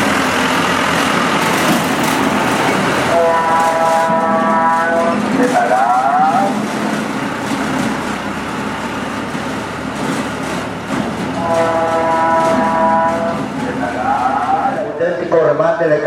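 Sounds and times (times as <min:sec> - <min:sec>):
vehicle running: 0:00.0 - 0:16.0
horn-like wavering call: 0:03.1 - 0:05.3, 0:11.4 - 0:13.4.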